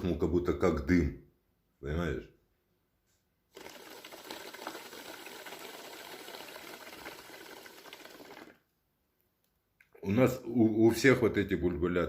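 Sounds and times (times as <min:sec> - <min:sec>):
bubbling through liquid: 0:03.5 - 0:08.7.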